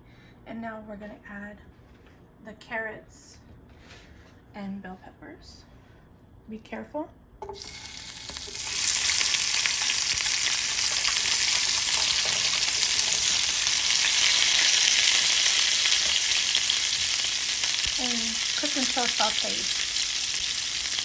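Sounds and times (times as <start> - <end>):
vegetables sizzling in hot oil: 7.4 - 21.0.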